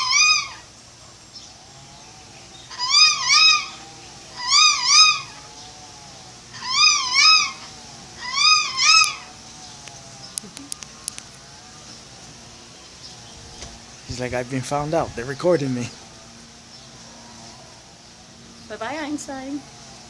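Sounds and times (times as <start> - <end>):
animal calling high notes: 1.7 - 20.0
faint clicks: 9.8 - 11.4.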